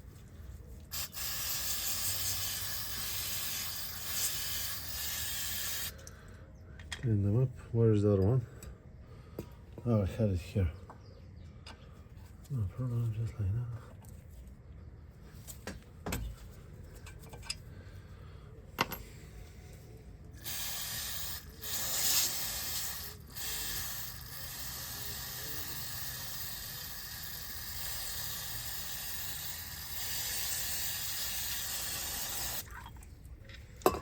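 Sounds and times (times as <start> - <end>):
aerosol spray hissing: 0.9 - 5.9, 20.4 - 32.6.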